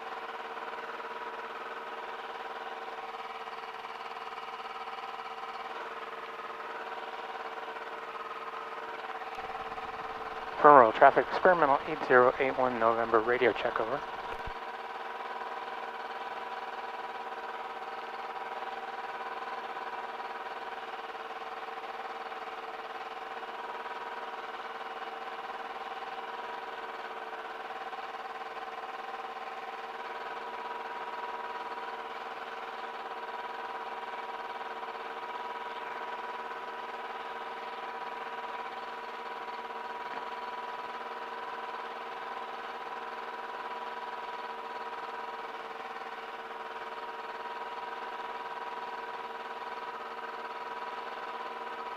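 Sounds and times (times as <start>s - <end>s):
aircraft engine idling: 8.1s - 14.6s.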